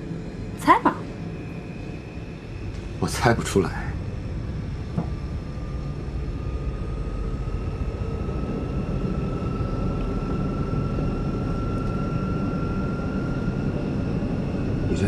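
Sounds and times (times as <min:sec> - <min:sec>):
aircraft engines droning: 0:00.0 - 0:15.0
thin engine whine: 0:00.0 - 0:15.0.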